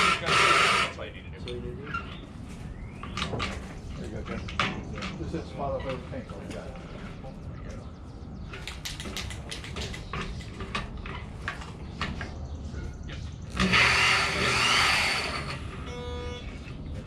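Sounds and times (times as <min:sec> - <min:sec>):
power grinder running: 0:00.0 - 0:01.0, 0:13.5 - 0:15.8.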